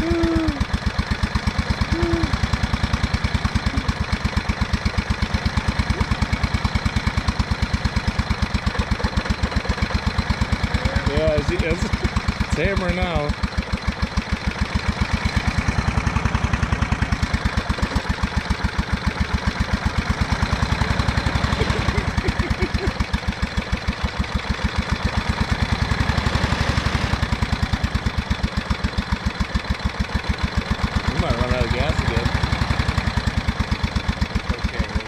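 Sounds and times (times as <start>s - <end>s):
engine knocking: 0.0s - 35.0s.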